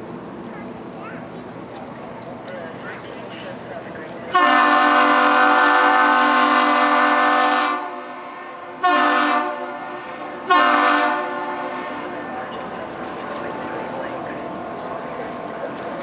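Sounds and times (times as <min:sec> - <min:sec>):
bridge horn blasts: 0:04.3 - 0:12.3.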